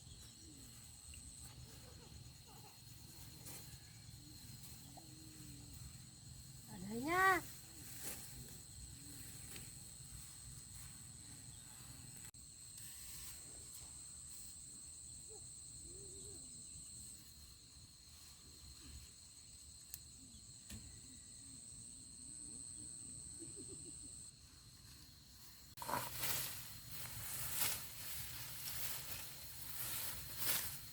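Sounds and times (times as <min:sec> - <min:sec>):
insects droning high whine: 0:00.0 - 0:30.9
higher insect whine: 0:08.0 - 0:30.9.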